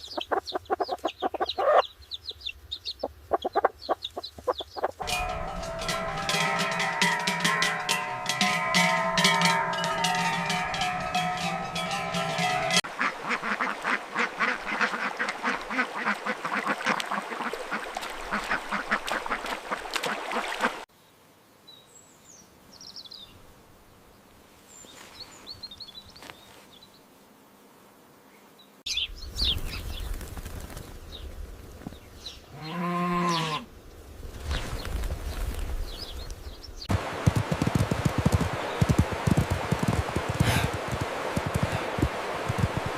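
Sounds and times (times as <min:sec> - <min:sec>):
small bird chirps: 0:00.0 - 0:05.0
cowbells clanking: 0:05.0 - 0:12.9, 0:37.3 - 0:41.8.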